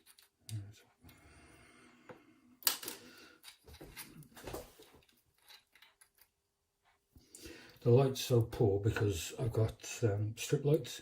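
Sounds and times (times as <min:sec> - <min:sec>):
metal lock parts clicking: 0:05.4 - 0:06.3.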